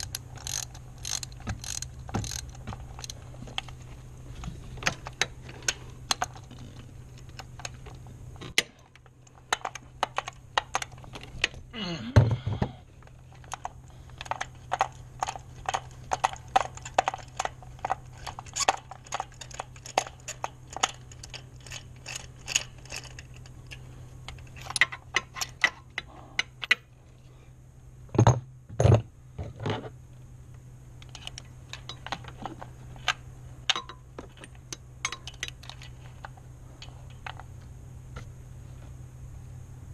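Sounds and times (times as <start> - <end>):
tools and metal parts clinking: 0.0 - 3.8, 13.0 - 26.9, 31.0 - 37.5.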